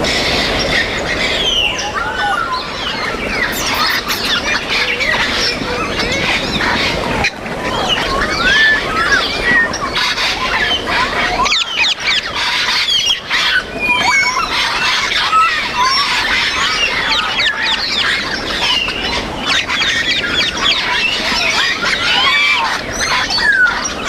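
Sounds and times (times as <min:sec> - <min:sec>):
parrots whistling and squawking: 0:03.4 - 0:05.2.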